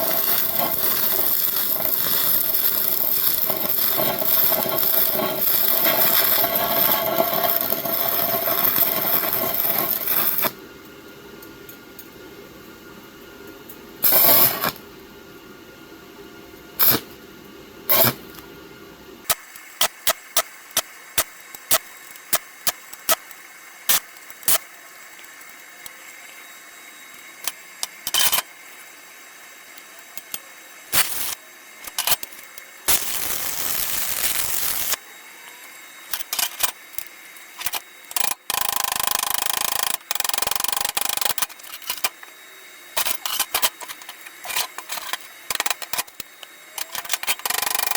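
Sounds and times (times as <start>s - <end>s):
metal fabrication bursts: 0.0s - 10.5s, 30.9s - 32.2s, 32.9s - 35.0s.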